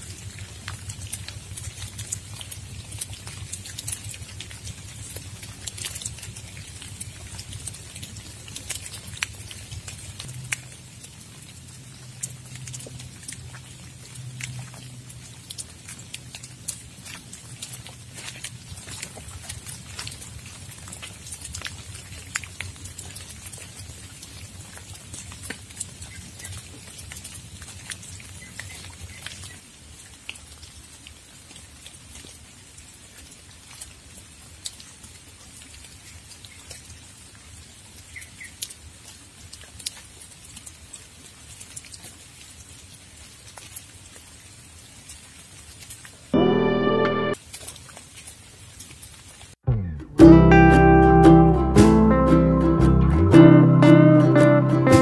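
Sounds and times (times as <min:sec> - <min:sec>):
sharp drips ticking: 0:00.0 - 0:32.3, 0:33.7 - 0:44.2
rain falling: 0:00.0 - 0:55.0
low rumble: 0:49.7 - 0:50.5.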